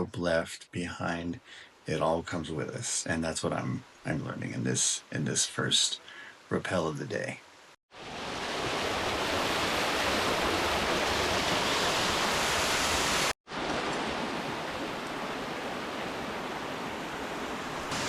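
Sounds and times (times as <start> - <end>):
rushing water in a creek: 7.9 - 18.0.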